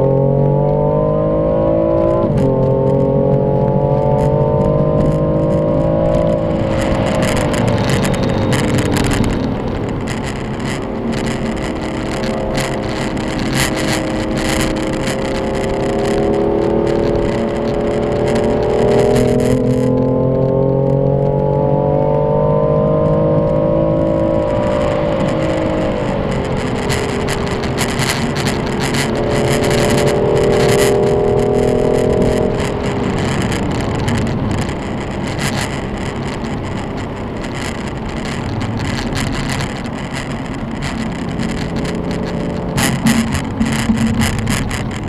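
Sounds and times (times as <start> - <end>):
car engine pulling under load: 0.0 - 45.0
rough rushing noise with crackles: 0.0 - 45.0.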